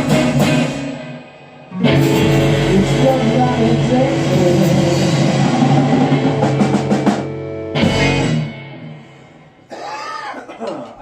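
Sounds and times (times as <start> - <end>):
drum fill: 0.0 - 8.6
electric blues band playing: 0.0 - 9.7.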